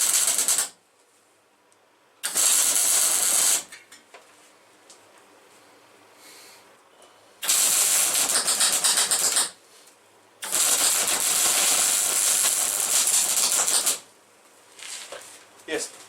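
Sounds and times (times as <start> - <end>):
arc welder crackling and sizzling: 0.0 - 0.8, 2.2 - 3.8, 7.4 - 15.8.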